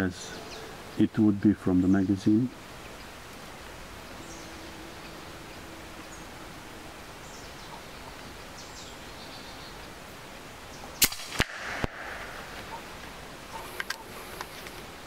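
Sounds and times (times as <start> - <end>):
air rifle shot: 11.0 - 12.9.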